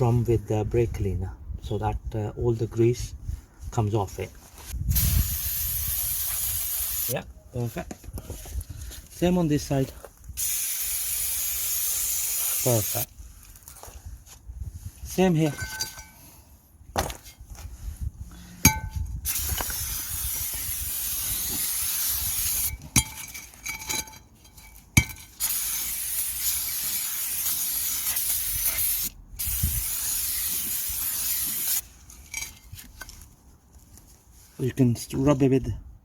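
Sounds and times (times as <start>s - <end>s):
aerosol spray hissing: 4.9s - 7.2s, 10.4s - 13.1s, 19.3s - 22.7s, 25.4s - 31.8s.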